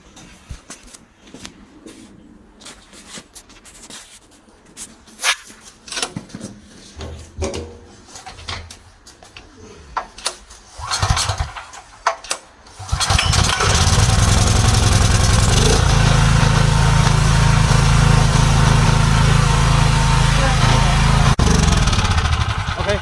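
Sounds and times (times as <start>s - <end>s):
generator engine running: 12.8s - 23.0s.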